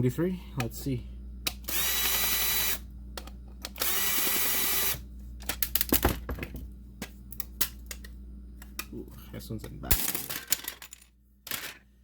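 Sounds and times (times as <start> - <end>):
handheld power tool whining: 1.7 - 2.8, 3.7 - 5.0.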